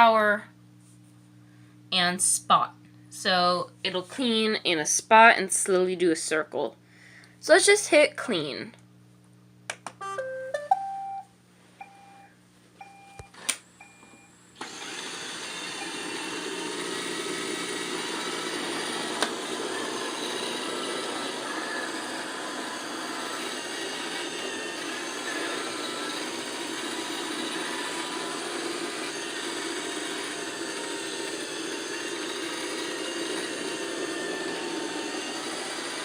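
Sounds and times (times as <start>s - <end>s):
short tune of beeps: 10.0s - 13.2s
robot vacuum motor and brushes: 14.6s - 36.0s.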